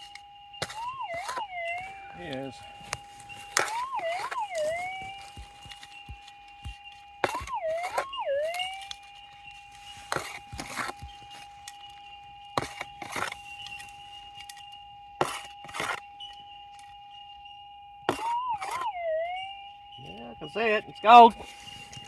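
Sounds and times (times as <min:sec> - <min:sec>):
metal detector warbling signal: 0:00.0 - 0:14.0, 0:18.1 - 0:22.0
metal detector hum: 0:00.0 - 0:14.6
digging scrapes and knocks: 0:00.0 - 0:16.1, 0:18.1 - 0:19.1, 0:21.2 - 0:22.0.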